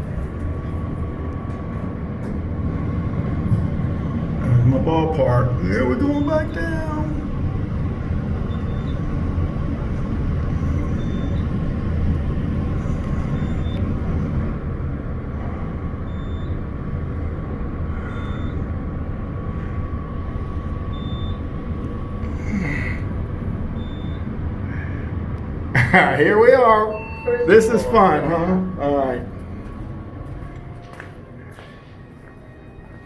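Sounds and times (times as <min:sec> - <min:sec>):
low rumble of elevator: 0:00.0 - 0:33.0
thin constant whine: 0:00.0 - 0:33.0
faint short high beep: 0:26.6 - 0:29.3.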